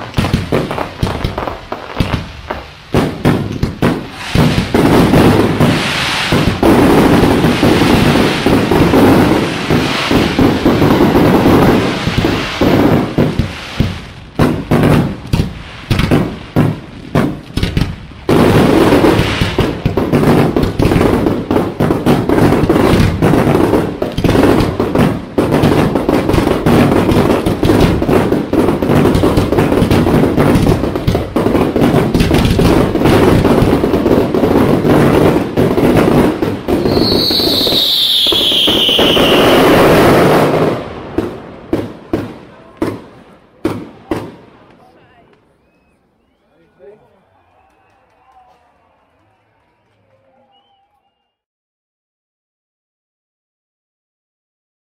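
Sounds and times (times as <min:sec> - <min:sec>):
fireworks bangs and crackling: 0:00.0 - 0:51.2
falling firework whistle: 0:36.7 - 0:40.6, 0:45.5 - 0:51.4.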